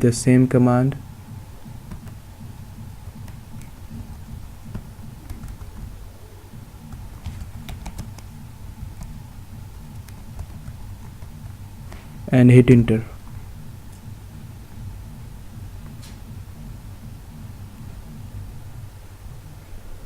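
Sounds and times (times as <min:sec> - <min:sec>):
low steady hum: 0:00.0 - 0:20.0
computer keyboard typing: 0:01.7 - 0:02.2, 0:03.0 - 0:06.1, 0:06.8 - 0:12.2.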